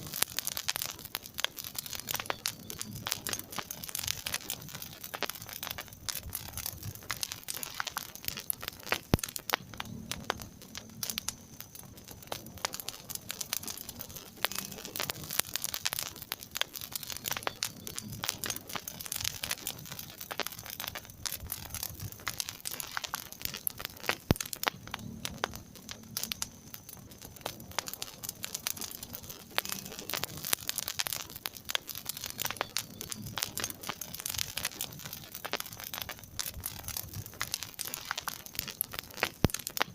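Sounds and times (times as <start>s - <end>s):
low rumble of flames: 0.0s - 39.9s
wood fire crackling and popping: 0.0s - 39.9s.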